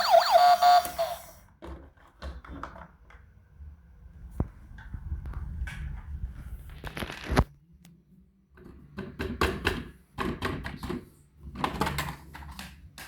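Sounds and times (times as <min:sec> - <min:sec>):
plastic toy cars clattering: 0:01.6 - 0:03.3, 0:08.6 - 0:13.0.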